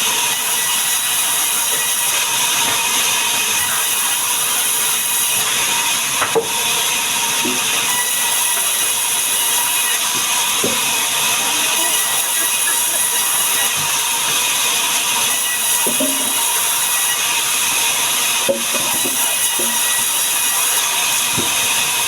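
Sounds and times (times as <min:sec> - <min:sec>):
sawmill saw hissing: 0:07.8 - 0:22.0.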